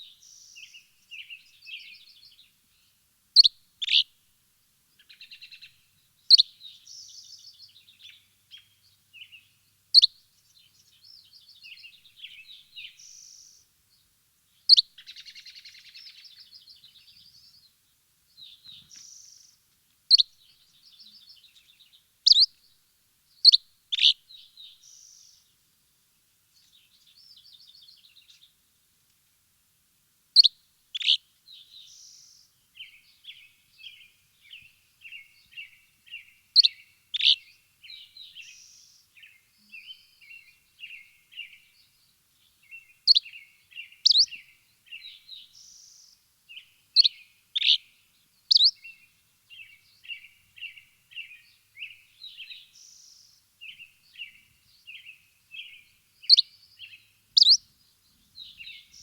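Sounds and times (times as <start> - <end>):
birds chirping: 18.4 - 22.6, 30.4 - 47.9, 48.5 - 59.0.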